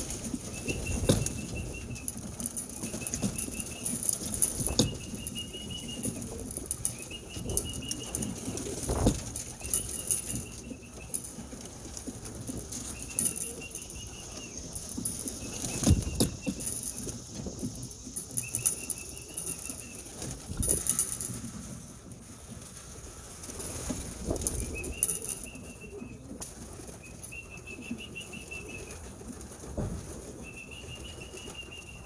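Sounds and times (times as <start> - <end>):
pigeons landing thumps: 0.0 - 17.5
wings flapping: 0.0 - 20.9.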